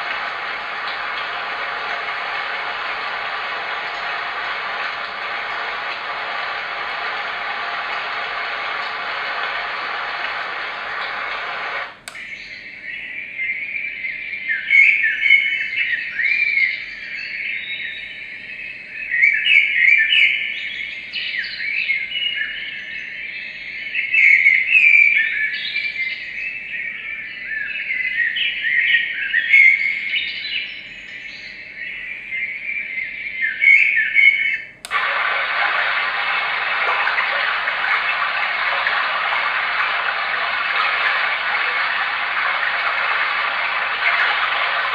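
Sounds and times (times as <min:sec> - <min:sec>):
machine switch click: 0:12.0 - 0:12.4
recorded birdsong chirps and trills: 0:12.1 - 0:34.8.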